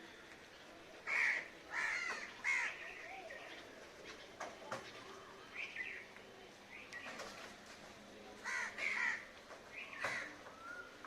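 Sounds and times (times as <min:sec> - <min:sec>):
crows cawing: 0:01.1 - 0:02.8, 0:08.4 - 0:09.3, 0:10.0 - 0:10.4.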